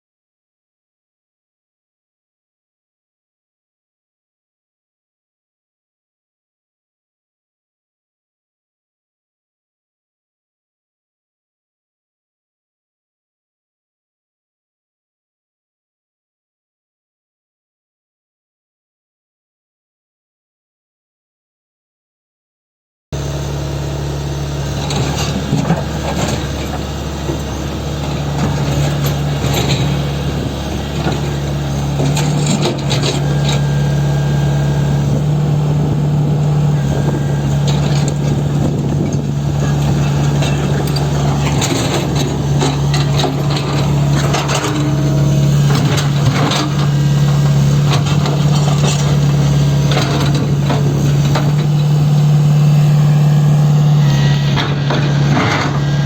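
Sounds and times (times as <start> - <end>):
excavator diesel engine running: 23.2 - 56.0
clanks and knocks: 24.8 - 33.7, 36.8 - 52.0, 54.5 - 56.0.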